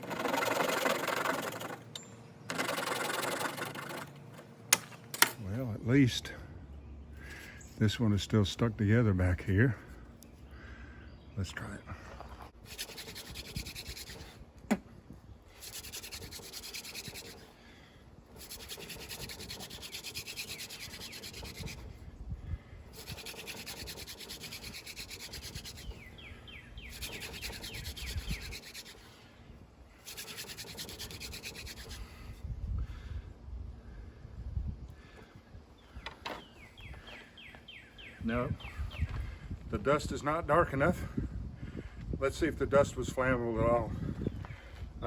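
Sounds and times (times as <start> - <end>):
wooden spindle rubbing on board: 0.0 - 1.8, 12.6 - 14.4, 15.6 - 17.5, 18.3 - 22.0, 23.0 - 26.1, 26.8 - 29.1, 30.0 - 32.2.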